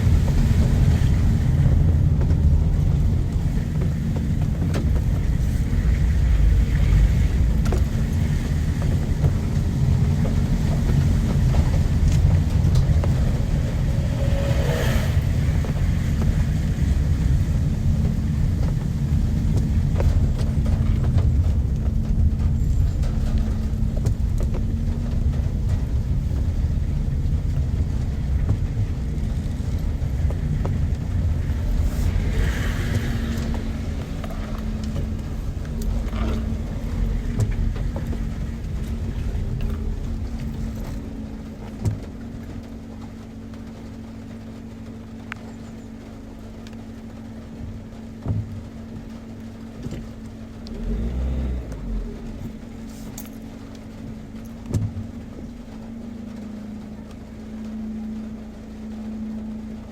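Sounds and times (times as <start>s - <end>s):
low rumble with constant hum: 0.0s - 59.9s.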